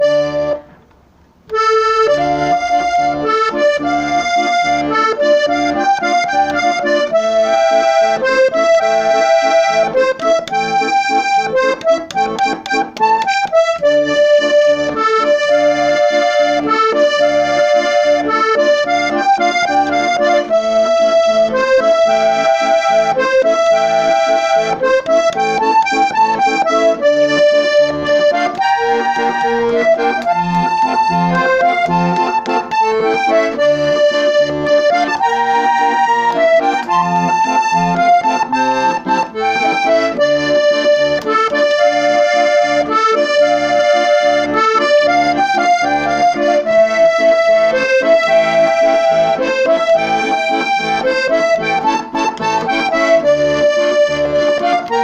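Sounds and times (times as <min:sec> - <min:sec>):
button accordion waltz: 0:00.0 - 0:55.0.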